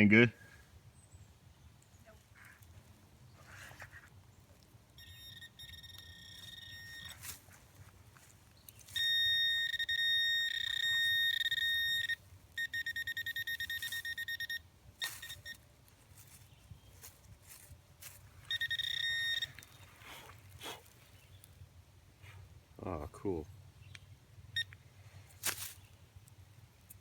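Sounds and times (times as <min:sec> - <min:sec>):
metal detector beeping: 0:04.9 - 0:07.5, 0:08.7 - 0:16.3, 0:18.1 - 0:20.3, 0:24.6 - 0:24.8.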